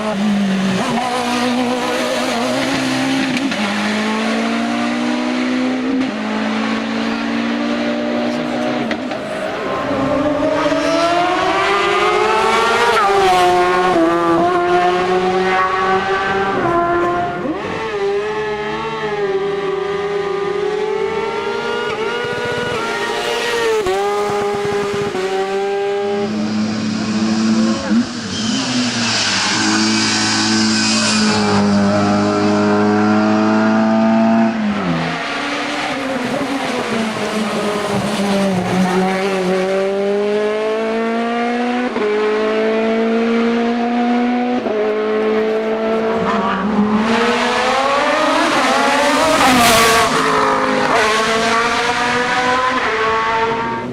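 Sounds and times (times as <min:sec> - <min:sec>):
racing car engine accelerating: 0:00.0 - 0:53.9.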